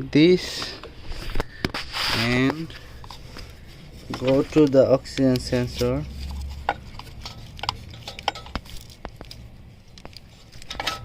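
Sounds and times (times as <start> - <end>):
tools clicking and tapping on parts: 3.0 - 11.0.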